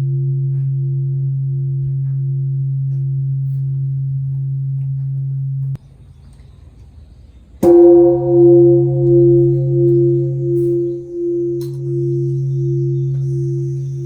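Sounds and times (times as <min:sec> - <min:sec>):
large temple bell humming: 0:07.6 - 0:14.0.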